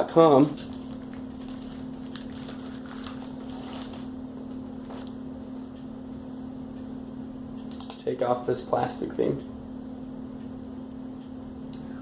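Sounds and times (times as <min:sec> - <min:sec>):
low electrical hum: 0:00.0 - 0:12.0
packaging rustling: 0:00.4 - 0:04.1.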